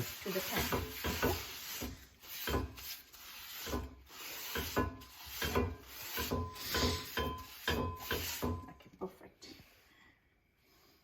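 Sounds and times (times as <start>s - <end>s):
rubbing strokes on a pan: 0.0s - 8.8s.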